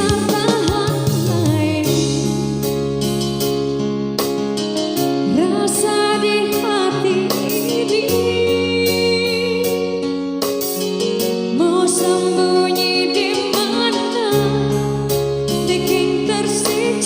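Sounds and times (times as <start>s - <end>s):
steady drum beat: 0.0s - 2.8s
keyboard chords: 0.0s - 17.0s
person singing: 5.3s - 10.0s, 11.5s - 14.8s, 15.6s - 17.0s.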